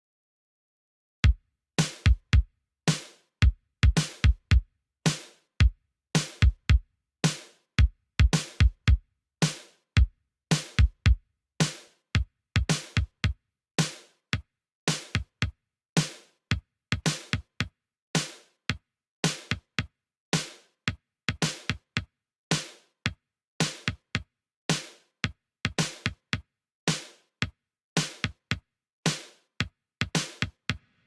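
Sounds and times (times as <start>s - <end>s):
drum machine beat: 1.2s - 3.0s, 3.8s - 5.2s, 6.2s - 6.8s, 7.8s - 9.6s, 10.5s - 11.1s, 12.6s - 13.1s.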